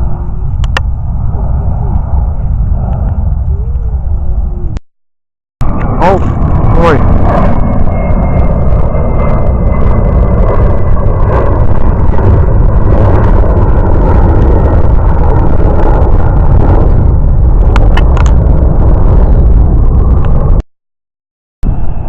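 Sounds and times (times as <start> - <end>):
jet engines roaring: 0.0 - 4.8, 5.6 - 20.6, 21.6 - 22.0
turbine whine: 0.0 - 4.8, 5.6 - 20.7, 21.6 - 22.0.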